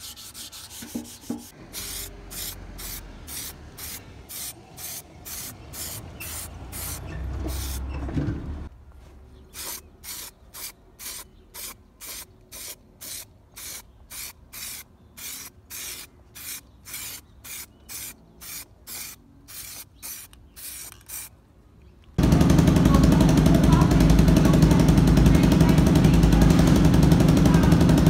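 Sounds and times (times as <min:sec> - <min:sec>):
sandpaper scraping: 0:00.0 - 0:07.9, 0:09.6 - 0:21.3.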